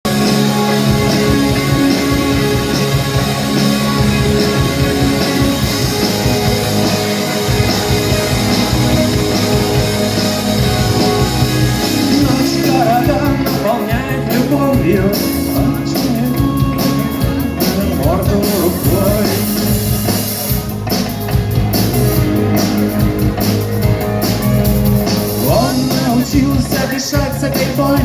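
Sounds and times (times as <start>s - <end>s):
rock band playing: 0.0s - 28.0s
person singing: 0.1s - 19.8s, 25.4s - 28.0s.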